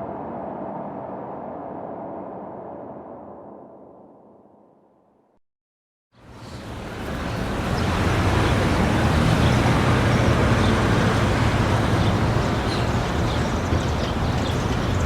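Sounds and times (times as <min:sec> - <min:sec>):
low engine rumble: 0:06.2 - 0:15.0.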